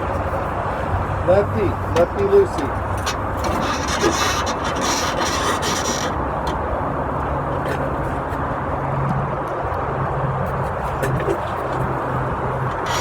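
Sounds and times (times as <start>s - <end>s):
winch rasping scrape: 1.9s - 6.6s, 12.6s - 13.0s.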